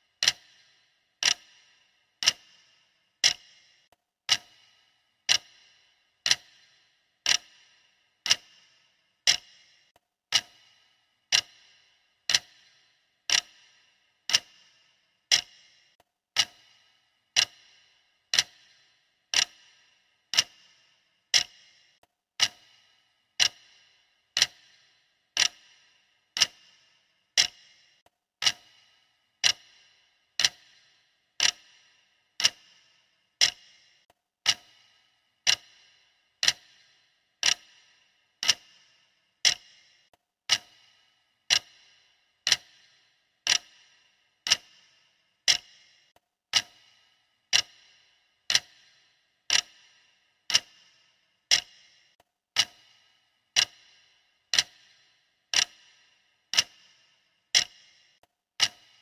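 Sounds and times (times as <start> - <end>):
clock ticking: 0.0 - 59.0.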